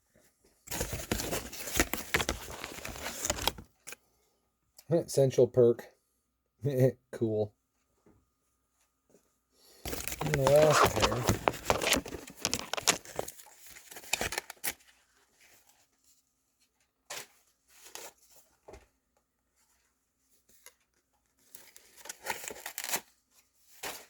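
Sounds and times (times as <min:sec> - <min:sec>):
packaging crinkling and tearing: 0:00.7 - 0:03.7, 0:09.9 - 0:14.9.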